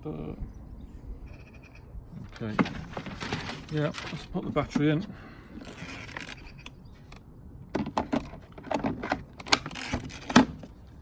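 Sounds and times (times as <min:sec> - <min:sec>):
plastic battery clicks and rattles: 0:05.6 - 0:10.7.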